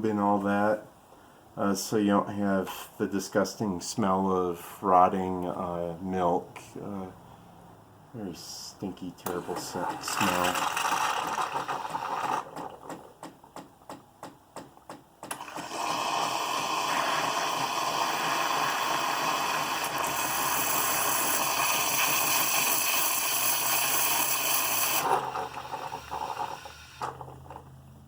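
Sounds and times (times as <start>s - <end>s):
espresso machine pump clicking: 15.2s - 27.4s
hot water and steam hissing: 15.4s - 27.1s.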